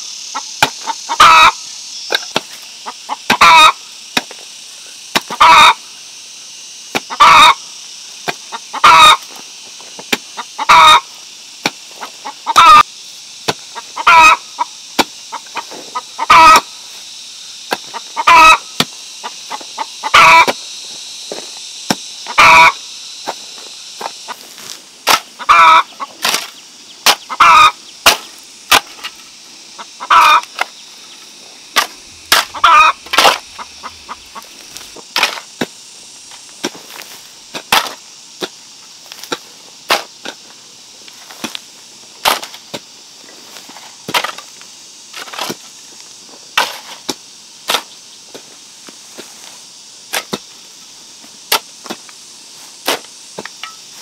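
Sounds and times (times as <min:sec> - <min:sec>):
chickens clucking: 0:00.3 - 0:03.8, 0:05.2 - 0:05.8, 0:07.0 - 0:07.6, 0:08.3 - 0:09.3, 0:10.3 - 0:11.1, 0:11.9 - 0:12.8, 0:13.7 - 0:16.7, 0:17.7 - 0:20.6, 0:22.2 - 0:22.8, 0:24.0 - 0:35.1.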